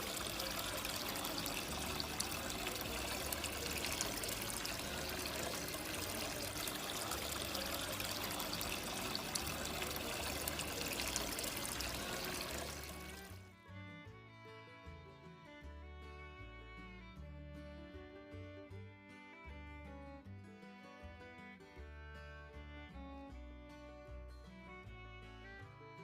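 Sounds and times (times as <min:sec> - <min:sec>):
water trickling in fountain: 0:00.0 - 0:13.5
music: 0:00.0 - 0:26.0.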